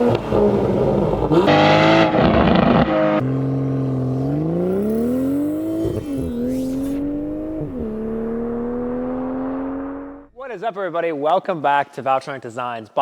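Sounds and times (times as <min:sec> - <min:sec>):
car engine revving: 0:00.0 - 0:10.3.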